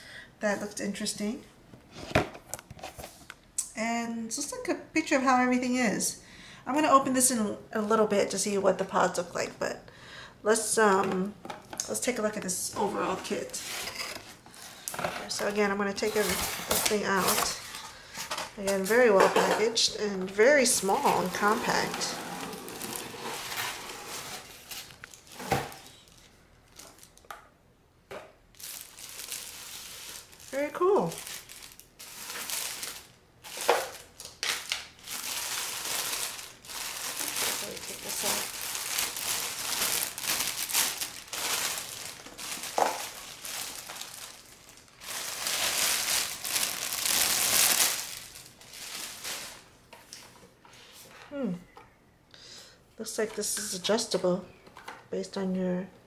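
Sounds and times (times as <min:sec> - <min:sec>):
packaging rustling and crinkling: 0:12.8 - 0:19.5, 0:20.3 - 0:27.3, 0:28.5 - 0:50.4.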